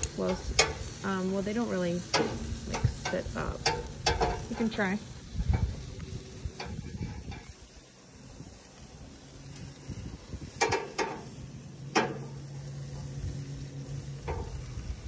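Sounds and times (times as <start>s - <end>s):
utensil clicking against pan: 0.0s - 1.0s, 2.0s - 4.8s, 10.6s - 11.3s.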